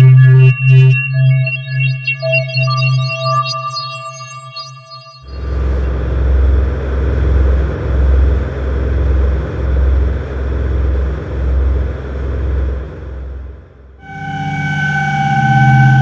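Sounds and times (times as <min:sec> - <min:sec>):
deep rumbling horror drone: 0:00.0 - 0:01.0, 0:05.3 - 0:16.0
synth music: 0:00.0 - 0:01.0, 0:05.3 - 0:16.0.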